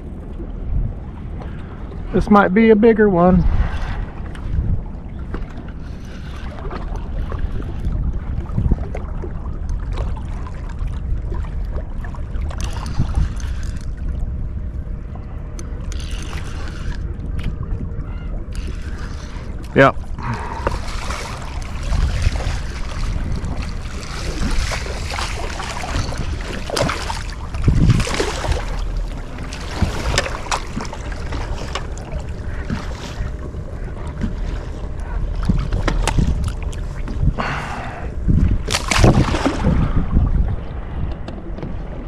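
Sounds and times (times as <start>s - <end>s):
wind rumbling on microphone: 0.0s - 42.0s
water splashes: 15.7s - 40.7s.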